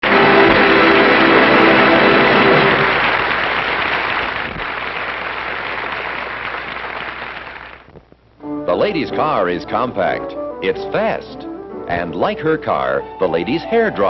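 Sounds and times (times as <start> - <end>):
loud rushing noise: 0.0 - 4.7
held music chord: 8.4 - 14.0.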